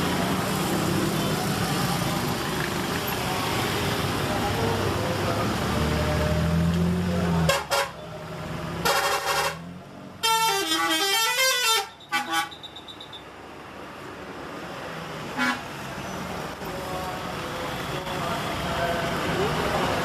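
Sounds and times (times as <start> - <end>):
bus engine running low: 0.0 - 10.6, 12.6 - 20.0
musical bus horns tooting: 7.3 - 8.2, 8.8 - 13.2, 15.4 - 15.8.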